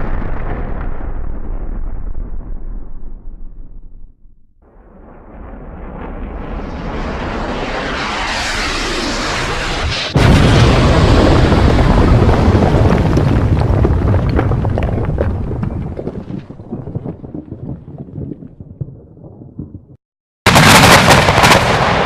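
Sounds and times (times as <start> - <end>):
loud explosion blast: 0.0 - 17.7, 20.5 - 22.0
deep rumble with crackling: 0.0 - 20.0
rushing noise: 4.9 - 12.2.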